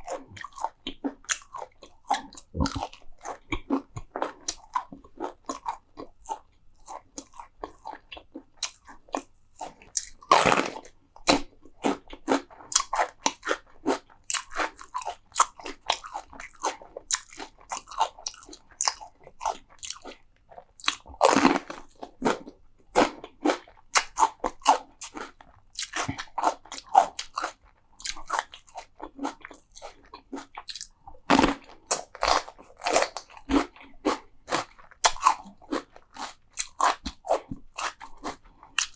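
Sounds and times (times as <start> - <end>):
mouth chewing crunchy food: 0.0 - 38.9
loud crunchy bites: 10.2 - 10.9.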